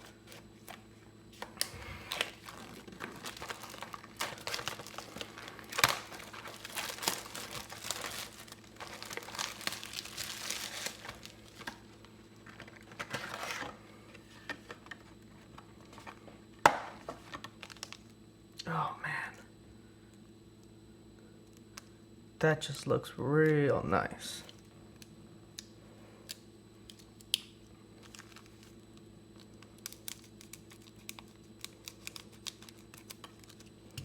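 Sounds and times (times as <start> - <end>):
plastic wrapping crinkling: 1.4 - 13.7, 17.2 - 18.1, 28.0 - 28.8, 29.4 - 34.0.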